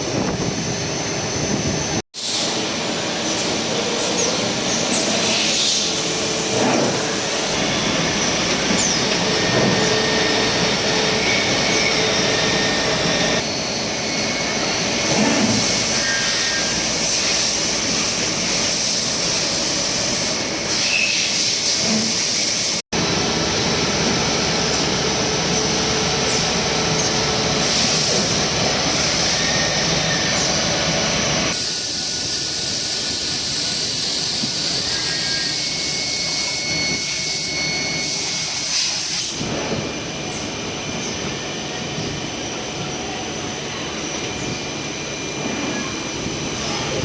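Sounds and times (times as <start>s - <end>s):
lathe machining hiss and whir: 0.1s - 47.0s.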